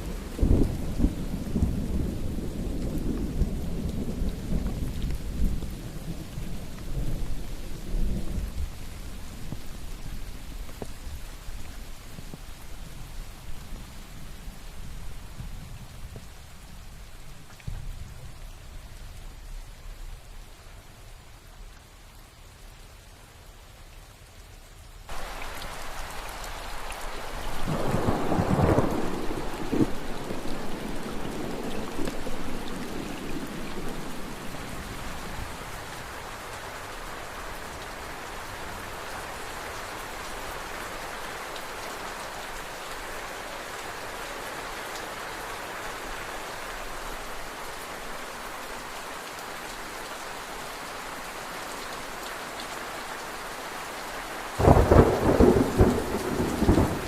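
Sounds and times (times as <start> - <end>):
heavy rain downpour: 0.0 - 57.0
thunder clap rumbling: 27.0 - 35.6, 54.6 - 57.0.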